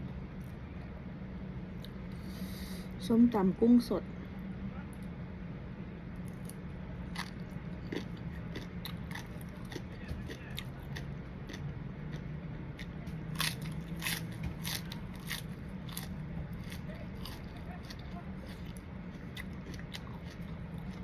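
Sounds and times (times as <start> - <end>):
steady low hum: 0.0 - 21.0
crunching and chewing food: 6.1 - 21.0.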